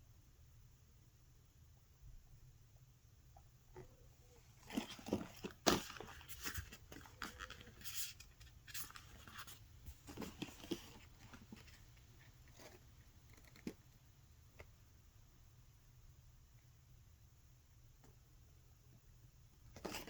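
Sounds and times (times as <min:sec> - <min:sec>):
paper rustling: 0:04.5 - 0:13.7.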